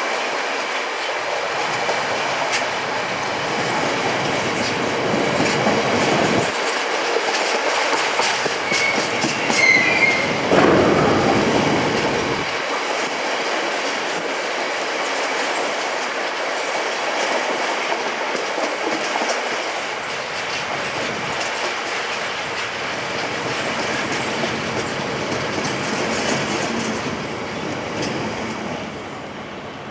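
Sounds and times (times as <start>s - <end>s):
train wheels clattering over rails: 0.0s - 29.6s
high wheel squeal: 8.2s - 12.6s.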